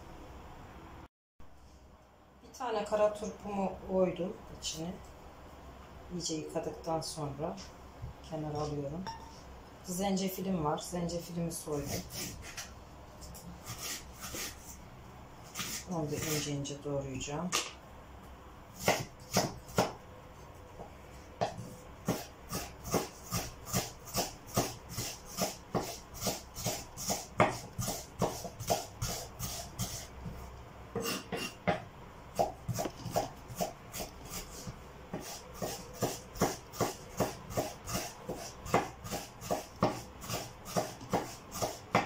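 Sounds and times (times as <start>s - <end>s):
knife chopping on cutting board: 13.6s - 14.6s, 15.5s - 16.4s, 18.8s - 20.0s, 21.4s - 30.0s, 32.4s - 42.0s.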